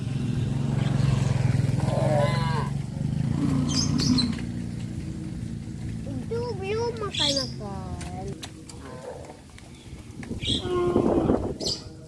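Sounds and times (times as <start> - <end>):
cow mooing: 1.8 - 4.4, 10.5 - 11.6.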